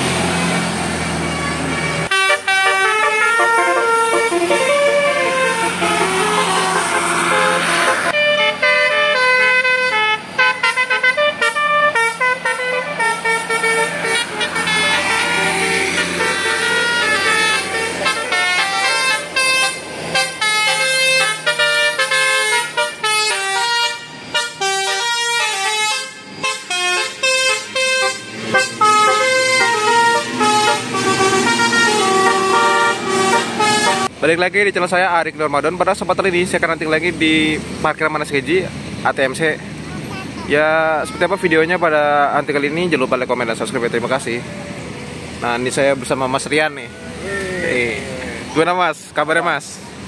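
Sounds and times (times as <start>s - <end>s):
bus horn melody: 1.2s - 34.2s.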